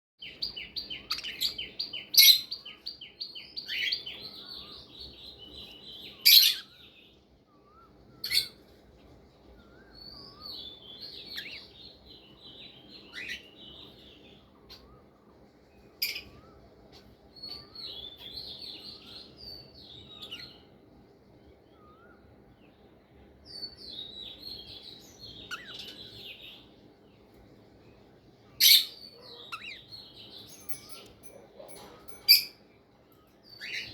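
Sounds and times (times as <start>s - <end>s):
budgerigars warbling and chattering: 0.3s - 3.0s, 10.2s - 15.1s, 16.0s - 20.7s, 24.0s - 26.7s, 28.6s - 32.6s, 33.6s - 33.9s.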